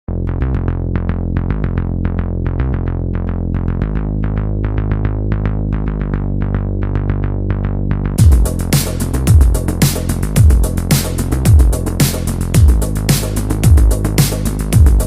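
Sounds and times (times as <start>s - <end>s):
synthesizer keyboard music: 3.3s - 15.0s.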